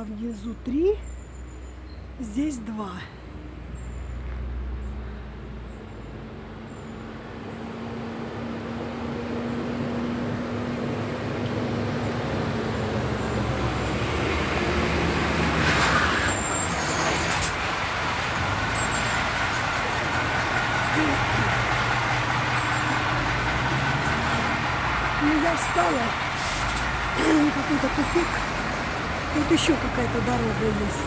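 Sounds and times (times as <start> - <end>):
vehicle engine running: 17.5 - 31.0.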